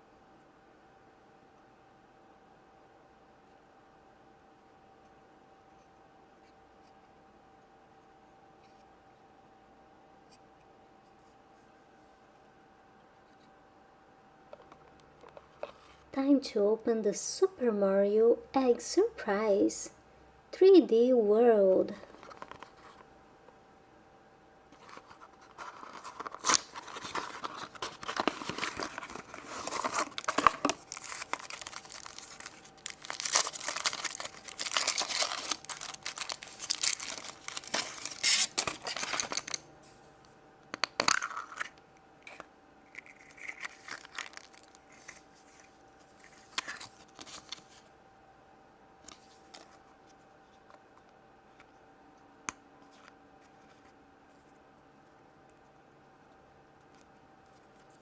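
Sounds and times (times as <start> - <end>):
wrapper tearing and crinkling: 24.8 - 39.6, 42.9 - 45.6.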